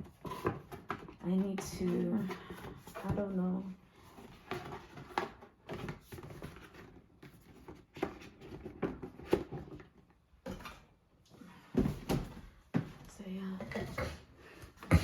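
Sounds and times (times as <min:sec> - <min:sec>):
knocks and clicks of objects handled: 0:00.0 - 0:03.3, 0:04.2 - 0:11.0.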